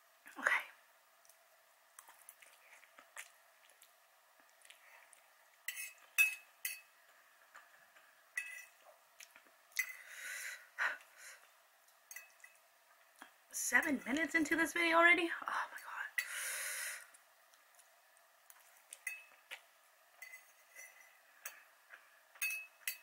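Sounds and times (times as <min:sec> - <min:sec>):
utensils clinking against bowl: 0:08.4 - 0:08.8, 0:20.2 - 0:21.6, 0:22.4 - 0:23.0.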